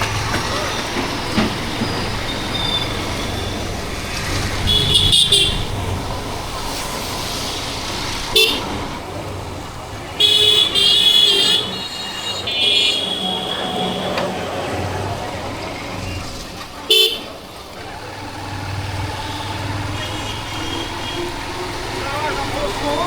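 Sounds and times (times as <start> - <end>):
motorcycle engine and road noise: 0.0 - 23.0
vehicle horn honking: 4.6 - 5.8, 8.3 - 8.9, 10.2 - 16.0, 16.9 - 17.6, 19.2 - 21.8.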